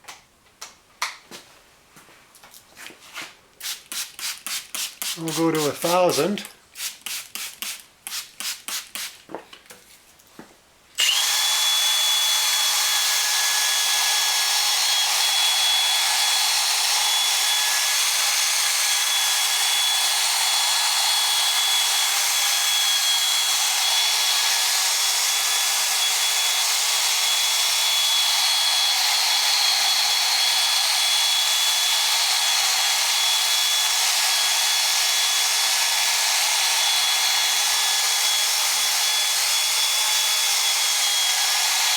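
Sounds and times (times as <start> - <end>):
hand-sanding strokes: 3.1 - 9.2
power tool whining: 11.0 - 41.9.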